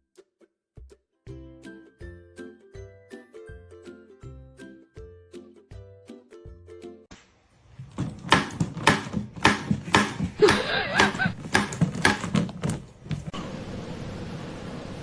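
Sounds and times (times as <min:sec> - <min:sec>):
thuds: 0:07.8 - 0:13.4.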